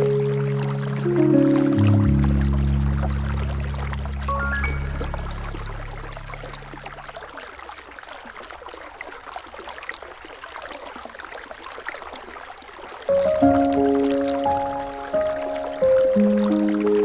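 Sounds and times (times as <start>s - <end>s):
music with sustained notes: 0.0s - 7.2s, 13.1s - 17.0s
water dripping: 0.0s - 9.7s, 12.8s - 17.0s
river water flowing: 0.0s - 17.0s.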